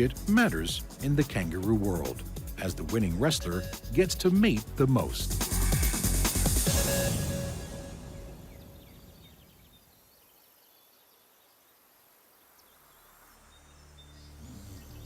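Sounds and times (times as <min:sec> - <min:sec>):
background music: 0:00.0 - 0:09.4
low sustained music tones: 0:12.6 - 0:15.0.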